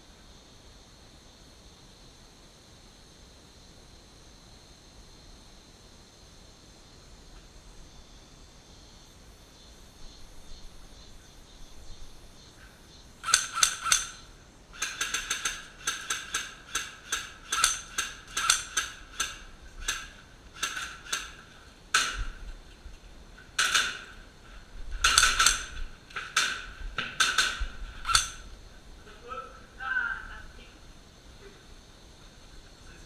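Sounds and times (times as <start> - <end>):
airsoft guns firing: 13.2 - 22.4, 23.5 - 24.2, 25.0 - 28.5.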